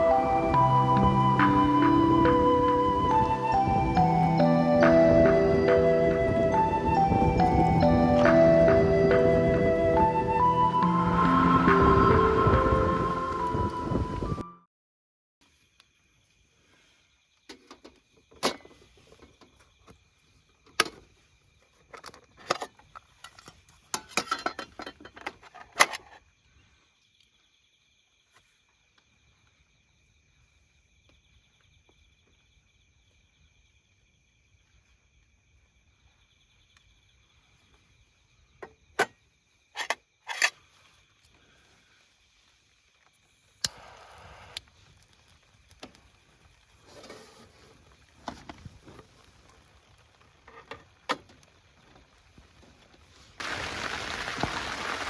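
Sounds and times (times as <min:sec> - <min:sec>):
insects trilling: 0:25.6 - 0:52.6, 0:53.4 - 0:55.0.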